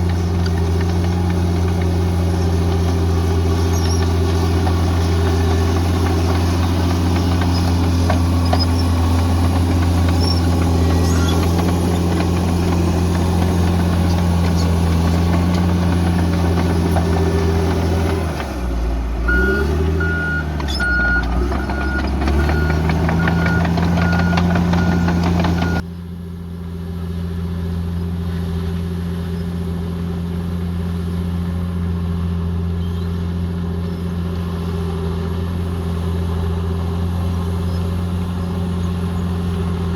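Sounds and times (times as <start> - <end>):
heavy diesel engine running: 0.0 - 29.2.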